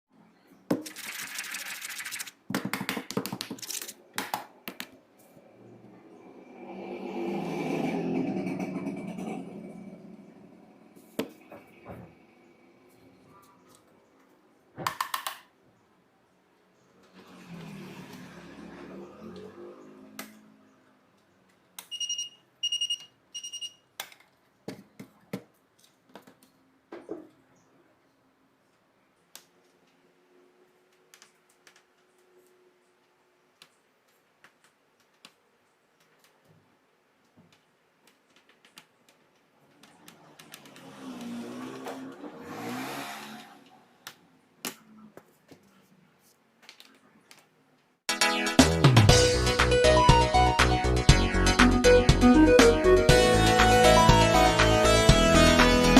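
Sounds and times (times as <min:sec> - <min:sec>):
clicks and taps: 0:00.7 - 0:05.0
alarm clock beeping: 0:21.9 - 0:23.8.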